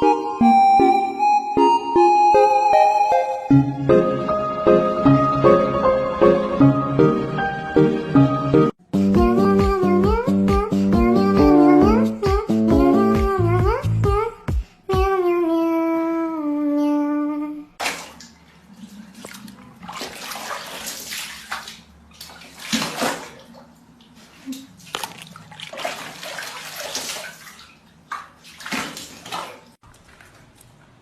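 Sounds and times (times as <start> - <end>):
pitched music: 0.0 - 14.2
running and splashing water: 17.8 - 30.6.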